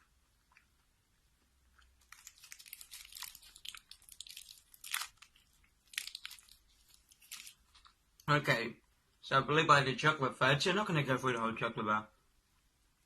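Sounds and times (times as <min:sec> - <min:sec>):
chocolate bar wrapper crackling: 0:01.8 - 0:08.0.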